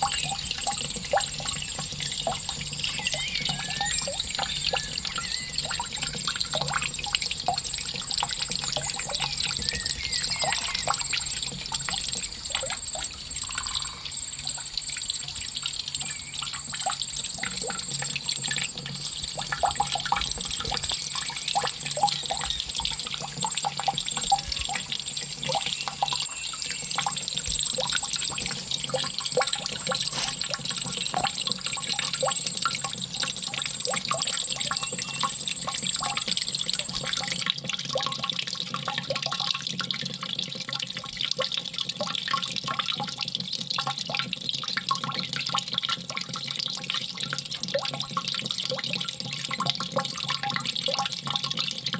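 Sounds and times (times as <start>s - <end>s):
thin high-pitched tone: 0.0s - 6.8s, 8.4s - 19.1s, 25.4s - 37.4s
water trickling and dripping: 0.0s - 51.9s
small water splashes: 14.9s - 51.7s.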